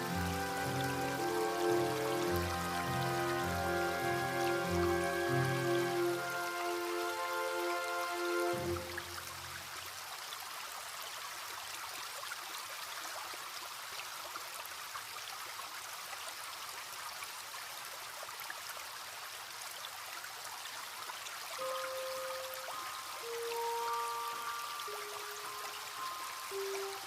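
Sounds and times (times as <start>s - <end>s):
soft music notes: 0.0s - 9.6s, 21.6s - 27.0s
small stream trickling: 0.0s - 27.0s.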